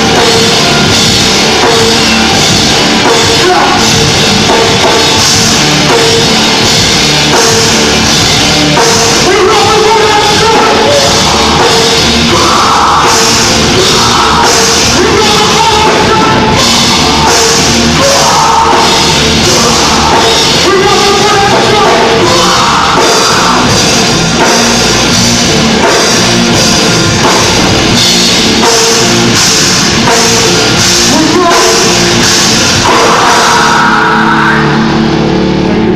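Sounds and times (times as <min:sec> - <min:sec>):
fast drum beat: 0:00.0 - 0:35.1
heavy metal band playing: 0:00.0 - 0:35.9
person singing: 0:08.9 - 0:24.0, 0:32.8 - 0:34.9.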